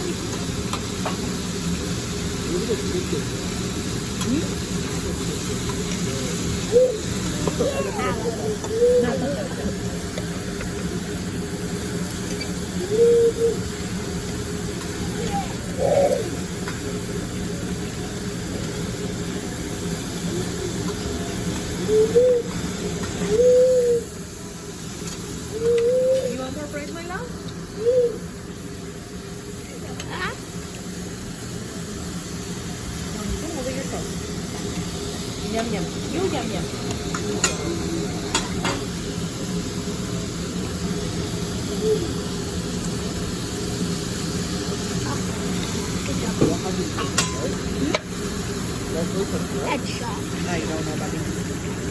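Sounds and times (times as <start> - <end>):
food sizzling on griddle: 0.0 - 51.9
restaurant background din: 2.2 - 24.0, 25.0 - 41.9, 44.3 - 51.9.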